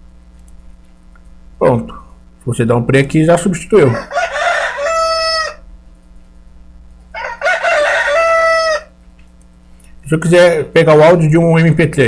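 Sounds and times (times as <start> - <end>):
rooster crowing: 3.8 - 5.7, 7.1 - 9.0.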